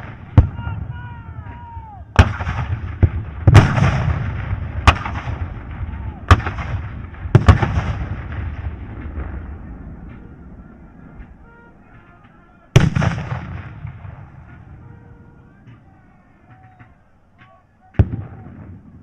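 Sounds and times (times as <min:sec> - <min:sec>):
distant fighting din: 0:00.0 - 0:19.0
gunshot-like blasts and explosions: 0:02.2 - 0:10.1, 0:12.8 - 0:14.6.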